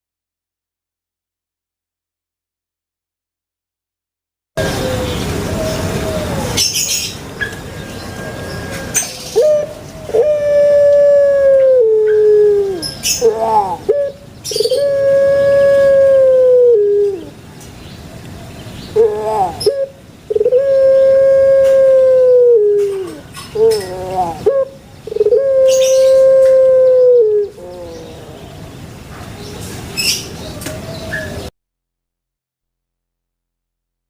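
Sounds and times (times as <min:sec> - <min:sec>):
dove cooing: 0:04.6 - 0:07.6, 0:08.2 - 0:17.4, 0:18.9 - 0:28.7.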